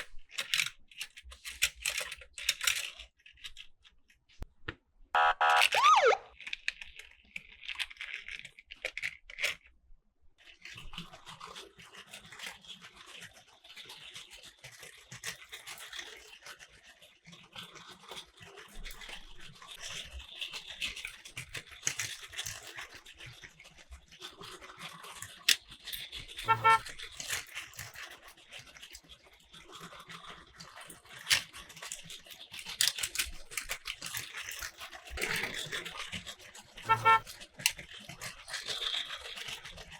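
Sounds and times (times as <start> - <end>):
plastic toy clicks and rattles: 0.0 - 3.8, 5.5 - 9.7, 10.4 - 39.9
pitched toy sound effect: 5.2 - 6.3, 26.5 - 26.8, 36.9 - 37.2
toy train motor buzz: 26.5 - 26.9, 36.9 - 37.3.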